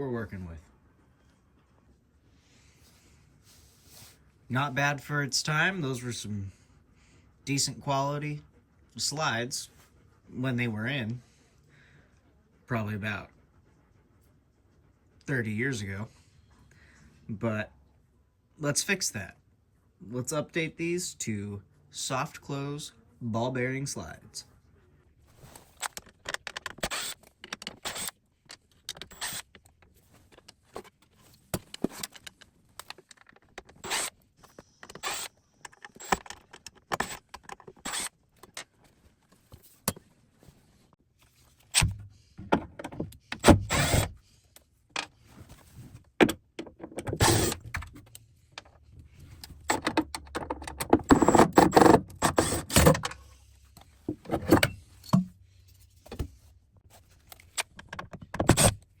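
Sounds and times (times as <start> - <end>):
small motor whirring: 26.8 - 28.2, 29.0 - 29.5, 33.8 - 36.3, 37.0 - 38.2, 43.5 - 44.1, 47.2 - 47.6
metal scraping: 47.1 - 48.1.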